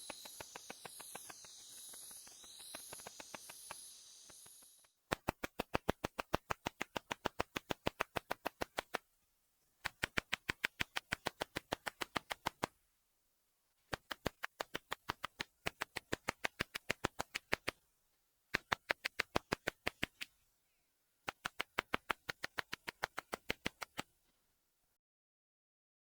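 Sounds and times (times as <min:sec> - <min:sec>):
katydid clicking song: 0:00.0 - 0:09.0, 0:09.8 - 0:12.8, 0:13.9 - 0:17.8, 0:18.5 - 0:20.4, 0:21.3 - 0:24.0.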